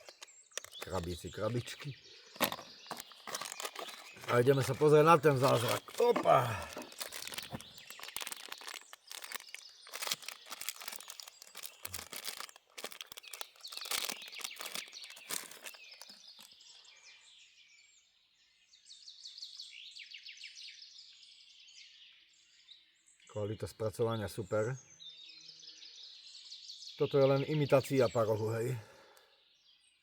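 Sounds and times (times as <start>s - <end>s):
packaging crinkling and tearing: 0.0s - 16.5s
songbird singing: 0.0s - 30.0s.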